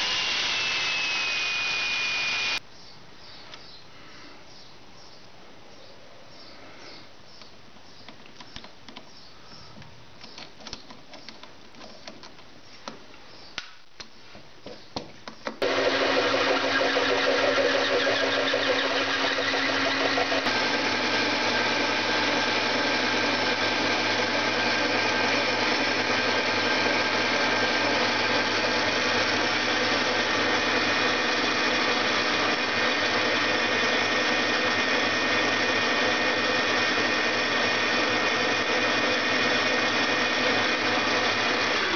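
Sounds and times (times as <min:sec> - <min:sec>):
machine motor running: 0:15.6 - 0:35.6.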